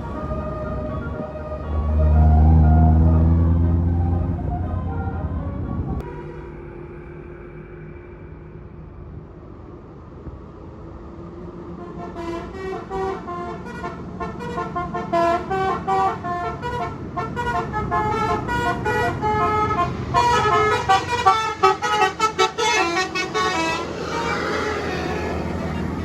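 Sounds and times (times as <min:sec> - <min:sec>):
bus engine running: 0:00.0 - 0:26.0
bus horn playing tune: 0:01.4 - 0:06.8, 0:11.8 - 0:26.0.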